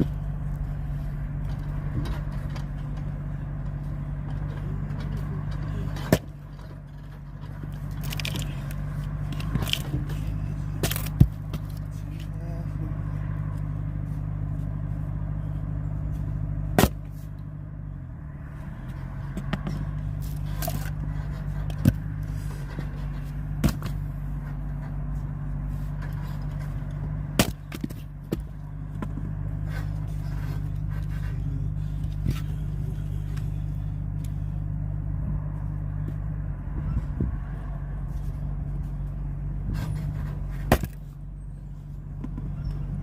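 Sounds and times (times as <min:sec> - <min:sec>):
engine running: 0:00.0 - 0:43.0
wood splitting cracks: 0:07.6 - 0:10.0, 0:10.7 - 0:11.9, 0:16.7 - 0:17.1, 0:20.3 - 0:21.0, 0:27.3 - 0:28.5, 0:40.6 - 0:41.1.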